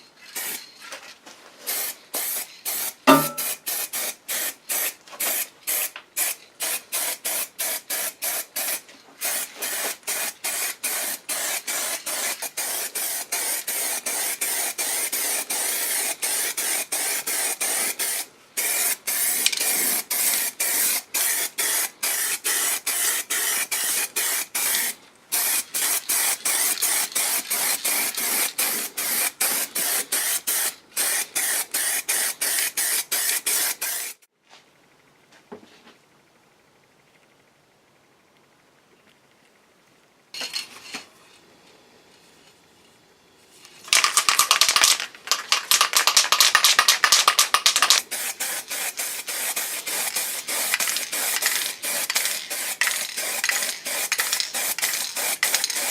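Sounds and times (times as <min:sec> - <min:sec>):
hissing spray bursts: 0:01.7 - 0:34.3, 0:44.0 - 0:55.9.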